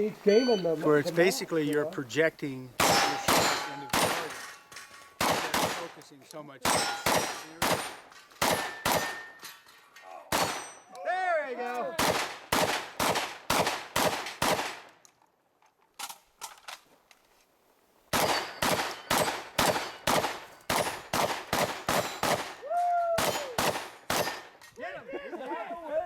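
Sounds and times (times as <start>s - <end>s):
shotgun shots: 2.8s - 4.5s, 5.2s - 6.0s, 6.6s - 9.3s, 10.3s - 10.8s, 12.0s - 14.9s, 18.1s - 22.6s, 23.2s - 24.6s.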